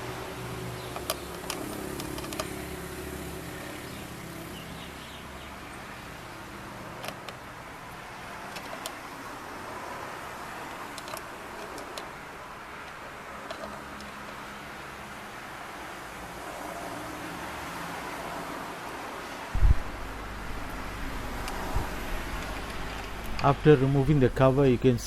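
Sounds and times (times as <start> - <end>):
clicks and knocks of hand tools: 0.8 - 2.6, 10.9 - 12.2, 12.8 - 14.4.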